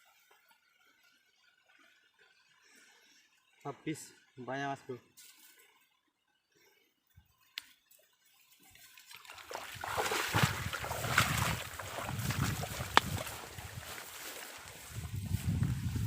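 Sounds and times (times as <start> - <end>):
water sloshing and splashing: 8.7 - 15.0.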